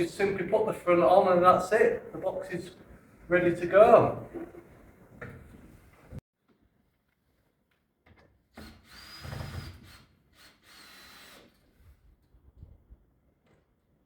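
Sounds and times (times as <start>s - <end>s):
power drill motor whine: 8.6s - 11.6s.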